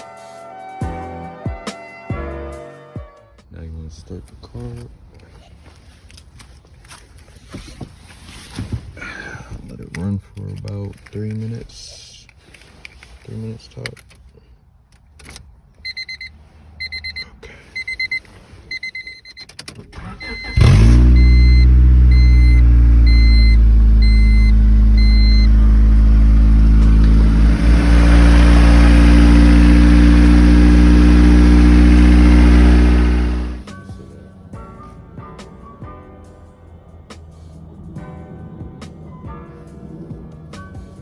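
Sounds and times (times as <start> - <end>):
car engine starting and idling: 14.9 - 33.9
dashboard warning beeps: 15.8 - 27.1.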